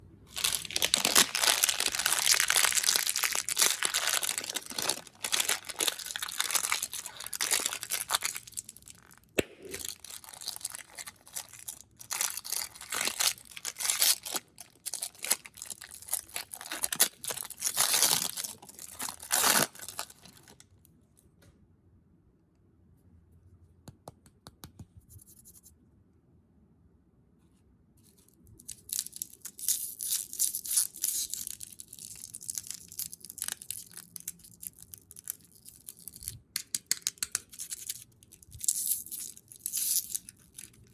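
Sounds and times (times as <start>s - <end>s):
plastic wrappers crinkling: 0.3s - 20.6s, 37.4s - 40.9s.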